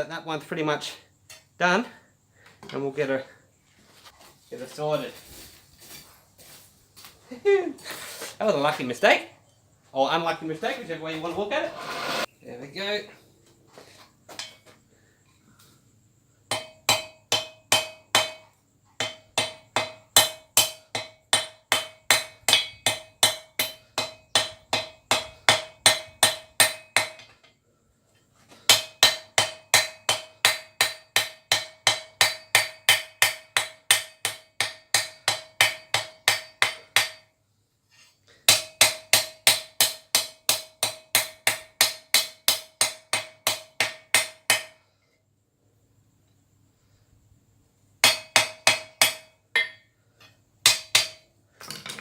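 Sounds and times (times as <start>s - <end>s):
hammer striking steel on anvil: 16.5s - 18.4s, 19.0s - 27.3s, 28.7s - 37.3s, 38.5s - 44.8s, 48.0s - 51.3s.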